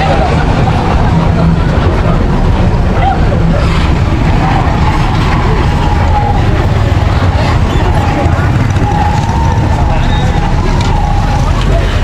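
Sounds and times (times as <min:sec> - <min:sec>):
motor vehicle rumble: 0:00.0 - 0:12.0.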